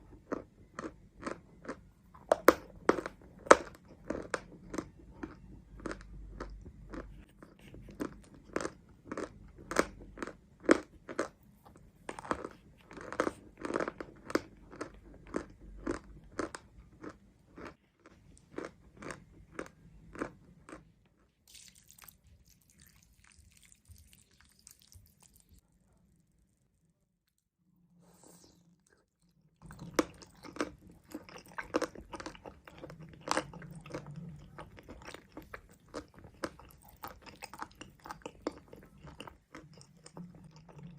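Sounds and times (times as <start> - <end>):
soft chewing: 0.0 - 26.0, 28.0 - 40.9
chalk being chewed crunching: 0.3 - 11.4, 12.1 - 20.8, 29.6 - 40.9.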